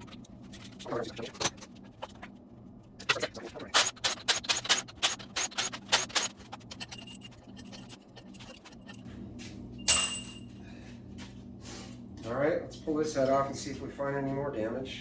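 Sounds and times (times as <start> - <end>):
loud metallic clink: 9.9 - 10.5.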